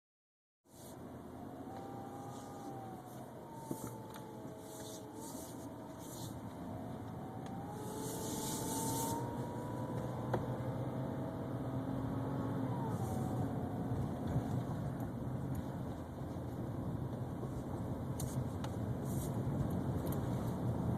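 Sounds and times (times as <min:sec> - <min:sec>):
thin whine with overtones: 0:00.7 - 0:14.9
car running and road noise: 0:00.7 - 0:20.9.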